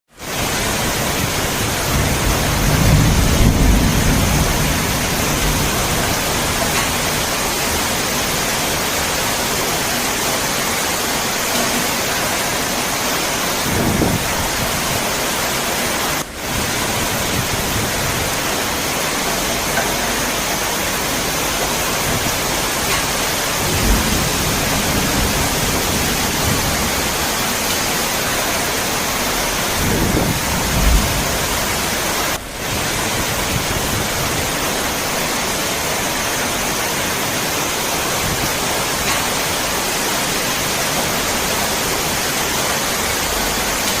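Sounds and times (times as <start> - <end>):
heavy rain: 0.1 - 44.0
thunder rumbling: 0.2 - 35.4.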